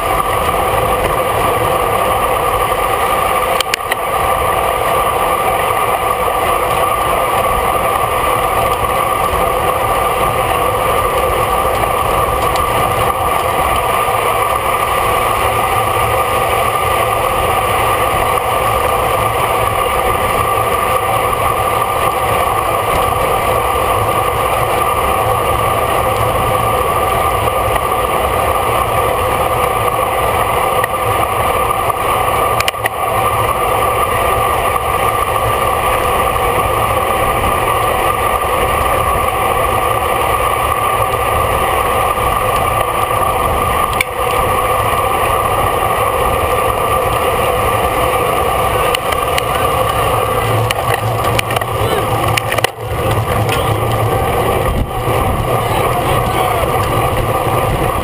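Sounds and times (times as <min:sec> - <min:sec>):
wind rushing over microphone: 0:00.0 - 0:58.0.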